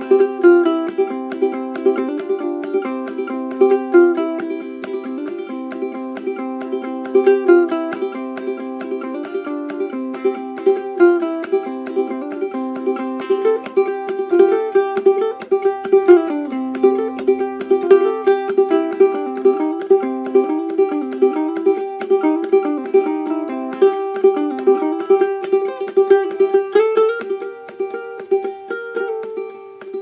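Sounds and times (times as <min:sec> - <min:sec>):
ukulele plucked melody: 0:00.0 - 0:30.0.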